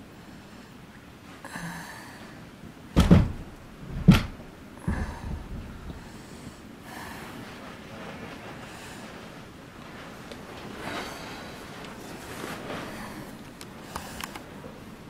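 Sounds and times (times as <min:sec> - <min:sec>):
faint rustling: 0:02.2 - 0:15.0
heavy thumps: 0:03.0 - 0:06.1.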